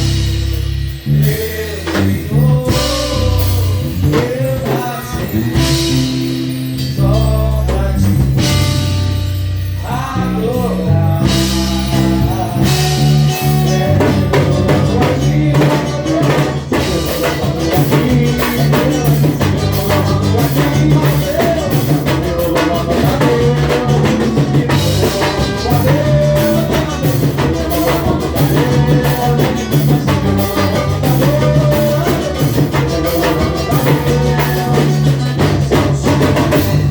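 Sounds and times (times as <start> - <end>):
drums and percussion beat: 0.0 - 36.9
pitched instrumental parts: 0.0 - 36.9.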